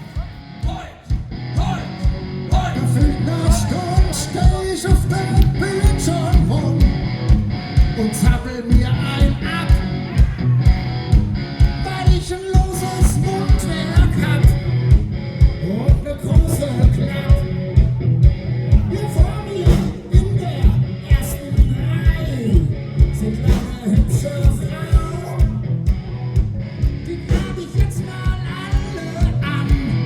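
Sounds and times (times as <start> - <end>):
drum beat: 0.0 - 29.9
electric guitar: 0.0 - 30.0
person singing: 1.6 - 7.0, 11.8 - 14.7, 18.7 - 25.6, 27.1 - 30.0.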